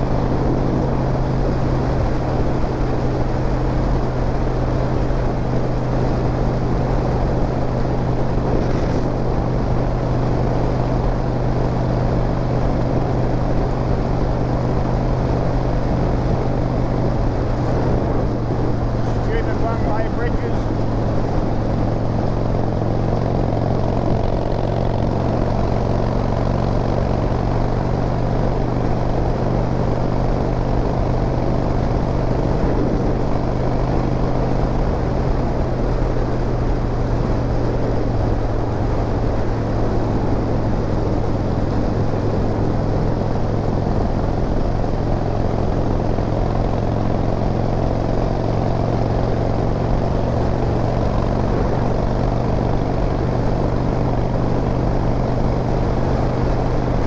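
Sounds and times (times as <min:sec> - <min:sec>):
motorcycle engine rumbling: 0:00.0 - 0:57.0
wind rush: 0:06.6 - 0:12.4, 0:15.0 - 0:26.2, 0:31.2 - 0:39.4.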